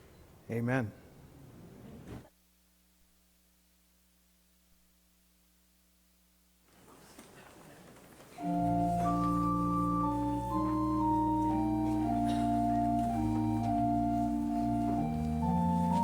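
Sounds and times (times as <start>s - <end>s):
church organ playing chords: 8.4s - 16.0s.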